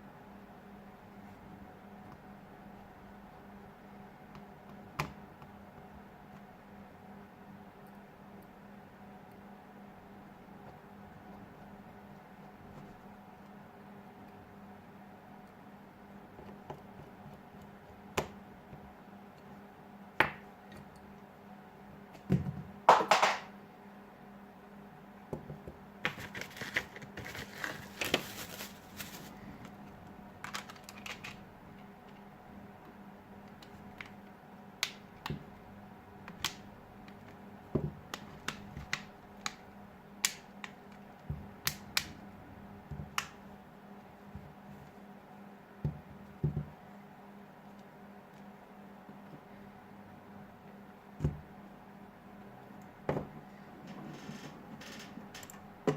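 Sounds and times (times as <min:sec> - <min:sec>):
faint steady hum: 0:00.0 - 0:55.9
scraping rustle: 0:26.1 - 0:29.5.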